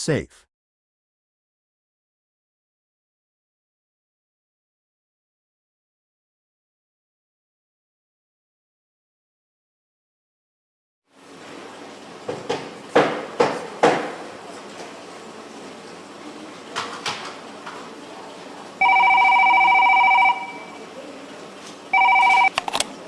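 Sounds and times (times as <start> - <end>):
telephone line hiss: 18.8 - 20.8, 21.9 - 22.6
telephone ringing: 18.8 - 20.8, 21.9 - 22.8.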